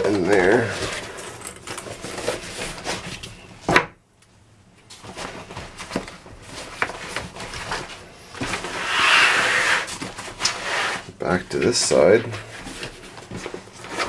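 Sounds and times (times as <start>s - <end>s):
tool bag rustling and clicks: 0.0s - 3.4s.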